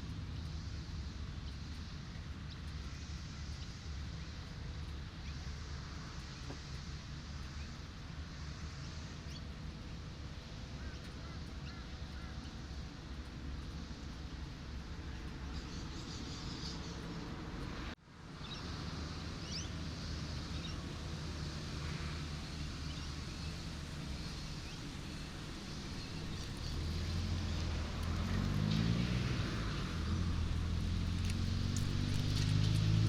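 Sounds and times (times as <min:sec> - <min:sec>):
traffic noise wash: 0:00.0 - 0:33.0
vehicle engine humming: 0:00.0 - 0:33.0
vehicle engine accelerating: 0:15.2 - 0:33.0.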